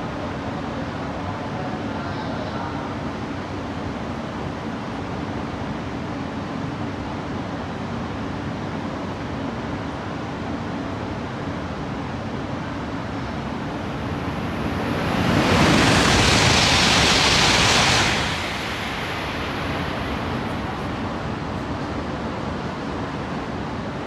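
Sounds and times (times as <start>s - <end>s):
train rushing past: 11.8s - 23.1s
background rumble: 13.1s - 21.9s.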